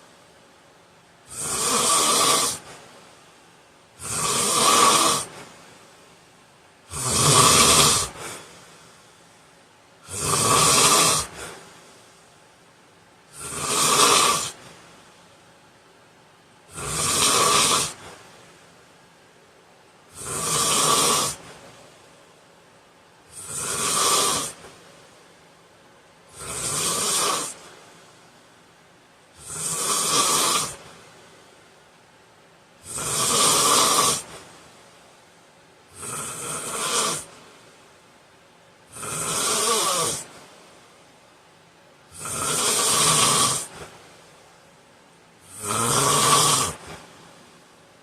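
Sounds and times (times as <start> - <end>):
man snoring: 1.3 - 2.7, 4.0 - 5.4, 6.9 - 8.5, 10.0 - 11.6, 13.3 - 14.6, 16.7 - 18.2, 20.1 - 21.5, 23.3 - 24.6, 26.3 - 27.6, 29.4 - 30.8, 32.8 - 34.4, 35.9 - 37.3, 38.9 - 40.3, 42.1 - 43.9, 45.5 - 47.0.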